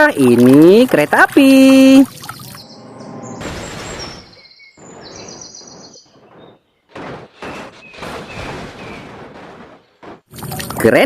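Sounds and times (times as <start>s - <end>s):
washing water sounds: 0.0s - 2.6s, 10.3s - 11.0s.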